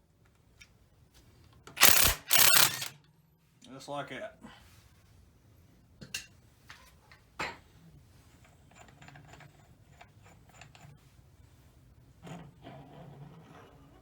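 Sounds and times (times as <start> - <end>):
metal parts clinking and rattling: 1.8 - 2.9
metal tools clanking: 1.8 - 2.9.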